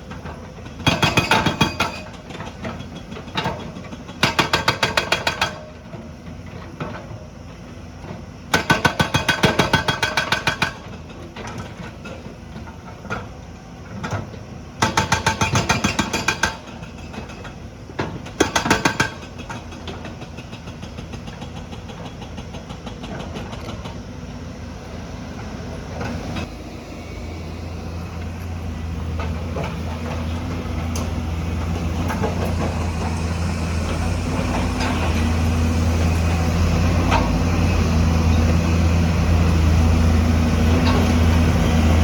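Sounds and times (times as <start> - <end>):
hydraulic rock breaker pounding: 0.1 - 6.0, 14.0 - 24.1
diesel engine running: 19.3 - 42.0.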